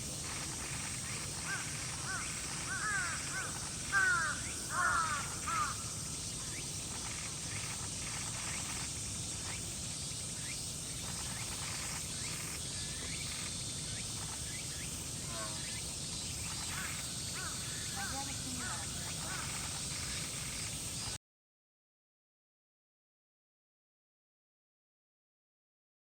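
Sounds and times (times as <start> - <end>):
steady high hiss: 0.0 - 21.2
bird harsh call notes: 0.3 - 6.2, 16.5 - 20.6.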